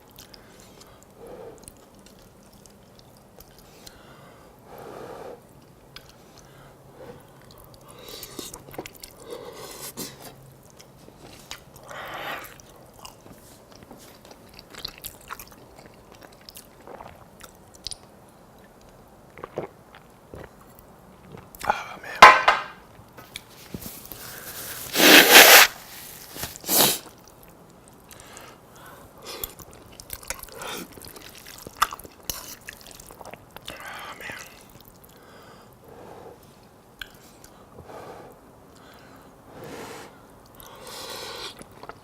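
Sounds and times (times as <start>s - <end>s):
person chewing food: 0.0s - 4.0s, 7.2s - 22.4s, 23.4s - 28.6s, 29.2s - 35.2s, 40.4s - 42.0s
wet mouth sounds: 14.4s - 21.8s, 24.3s - 25.7s.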